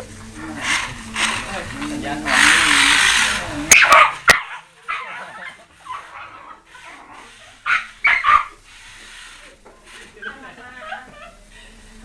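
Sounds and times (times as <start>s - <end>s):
dog barking and yipping: 3.7s - 8.6s.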